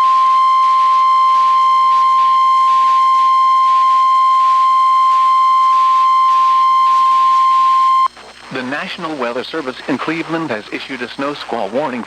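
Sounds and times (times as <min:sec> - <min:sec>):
high-pitched alarm tone: 0:00.0 - 0:08.1
radio static hiss: 0:00.0 - 0:12.0.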